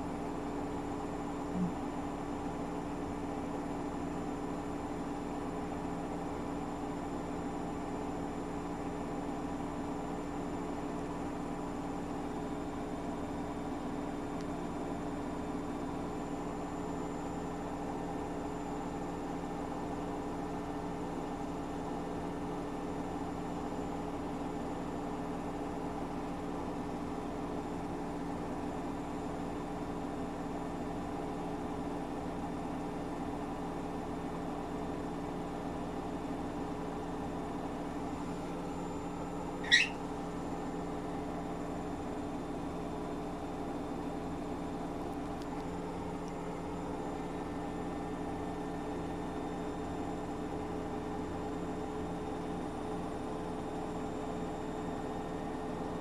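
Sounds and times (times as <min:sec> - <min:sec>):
washing appliance humming: 0:00.0 - 0:54.4
high-pitched chirp: 0:39.6 - 0:40.0.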